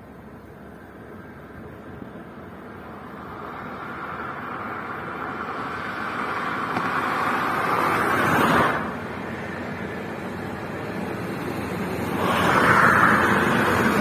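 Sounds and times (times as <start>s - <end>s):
car driving past: 11.9s - 14.0s.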